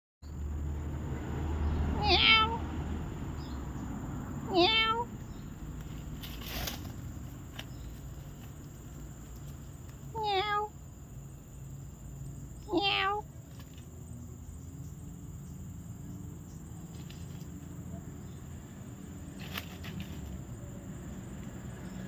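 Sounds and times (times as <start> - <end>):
cat meowing: 2.0 - 2.6, 4.5 - 5.1, 10.1 - 10.8, 12.7 - 13.3.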